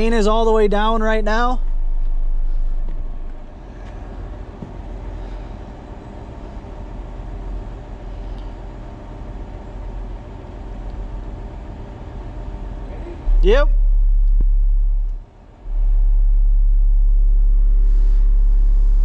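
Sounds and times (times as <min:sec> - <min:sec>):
low bass test tone: 0:00.0 - 0:08.4, 0:12.9 - 0:19.0.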